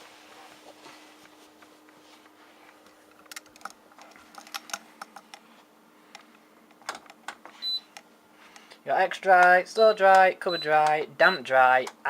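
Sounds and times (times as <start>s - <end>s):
faint steady hum: 0.0s - 12.0s
sharp light clicks and taps: 9.4s - 11.0s.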